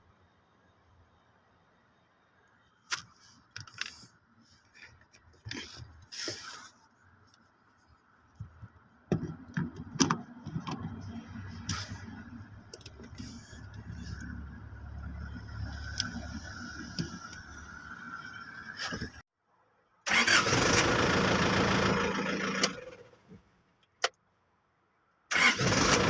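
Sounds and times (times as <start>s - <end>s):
engine cranking without starting: 20.1s - 23.2s, 25.3s - 26.0s.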